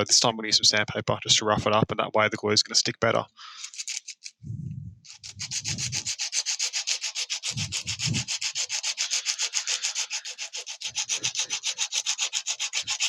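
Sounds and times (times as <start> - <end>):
sandpaper rubbing on plastic: 3.6 - 4.4, 5.0 - 13.0.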